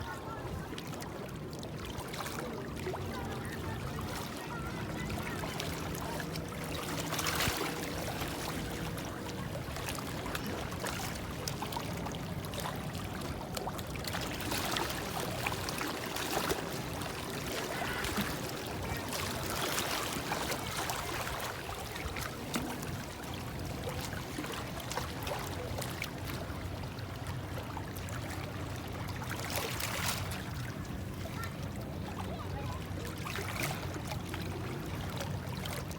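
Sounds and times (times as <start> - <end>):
rush of water: 0.0 - 35.9.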